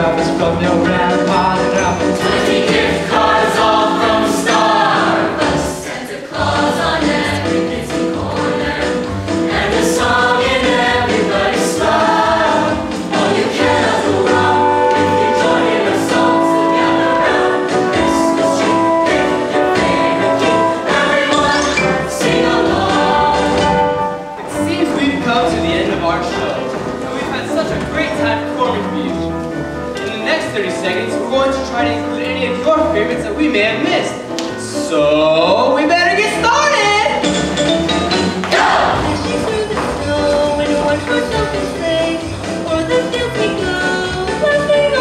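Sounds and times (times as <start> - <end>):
choir-like ensemble chords: 0.0 - 26.7, 37.7 - 42.2
percussion hits: 37.1 - 43.7.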